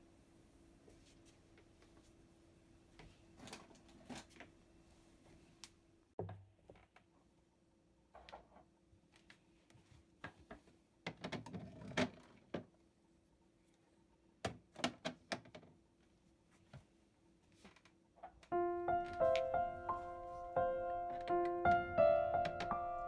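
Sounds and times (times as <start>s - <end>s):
piano music: 18.5s - 23.0s.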